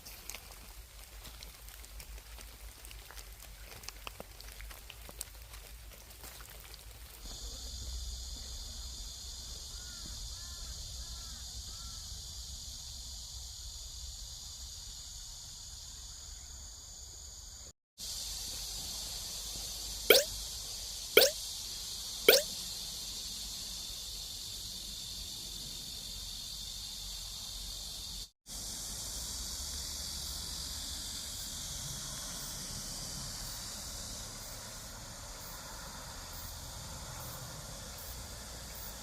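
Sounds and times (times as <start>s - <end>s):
high-pitched insect chorus: 4.8s - 39.0s
sharp falling chirp: 20.1s - 20.3s, 22.3s - 22.5s
short chirps: 20.1s - 20.3s, 22.3s - 22.5s.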